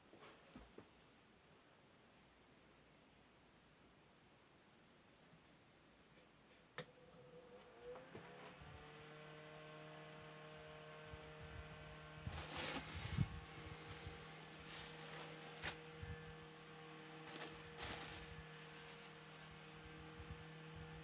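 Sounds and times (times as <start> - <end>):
electric fan motor hum: 11.1 - 21.0.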